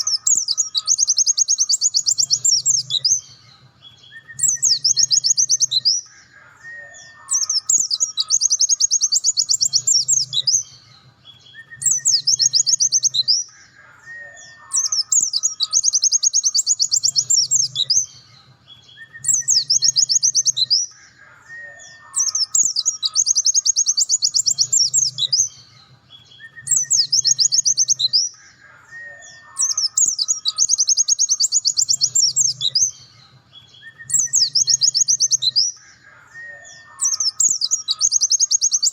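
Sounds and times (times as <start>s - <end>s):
bird chattering trills: 0.0s - 3.4s, 4.0s - 18.2s, 18.8s - 25.7s, 26.3s - 38.9s.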